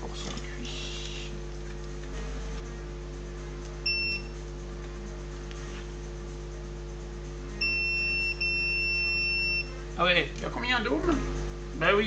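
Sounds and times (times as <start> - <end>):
low electrical hum: 0.0 - 12.0
multimeter continuity beeping: 3.8 - 4.4, 7.5 - 9.9.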